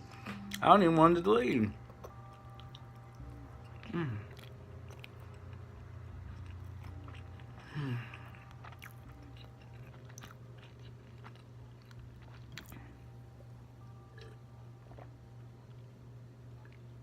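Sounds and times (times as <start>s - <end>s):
steady low hum: 0.0s - 17.0s
chewing and biting food: 1.9s - 13.1s
person humming: 3.8s - 4.4s, 7.6s - 8.3s.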